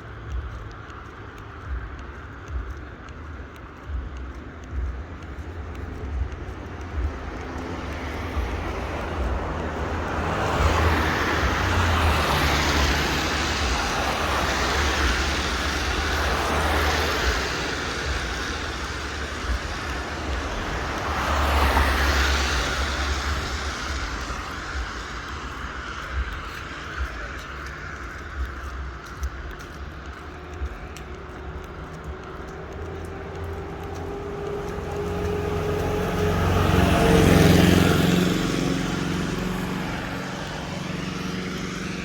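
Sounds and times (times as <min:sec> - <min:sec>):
steady low rumble: 0:00.0 - 0:36.4
traffic hiss on wet road: 0:00.0 - 0:42.0.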